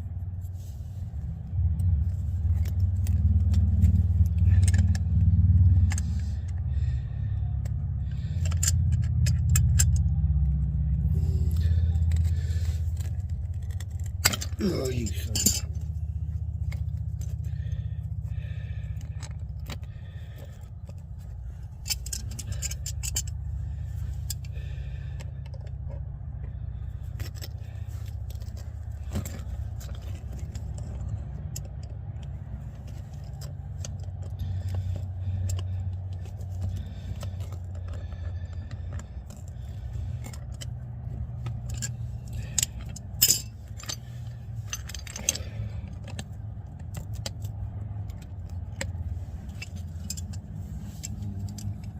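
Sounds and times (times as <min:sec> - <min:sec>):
metal tools clinking and scraping: 0:00.0 - 0:51.9
steady low rumble: 0:00.0 - 0:51.9.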